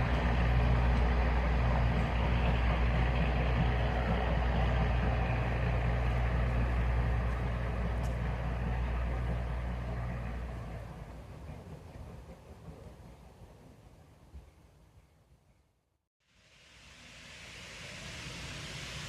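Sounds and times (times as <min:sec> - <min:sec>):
diesel locomotive engine idling: 0:00.0 - 0:14.3.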